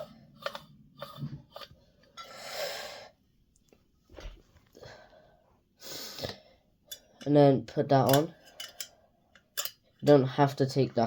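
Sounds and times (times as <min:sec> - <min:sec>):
metal lamp parts clicking: 0:06.9 - 0:10.3.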